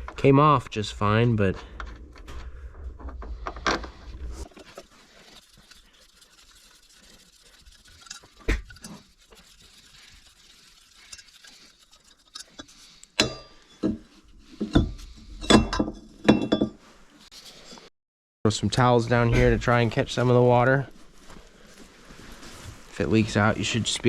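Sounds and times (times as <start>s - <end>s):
hand tools and metal parts clinking: 4.4s - 16.8s.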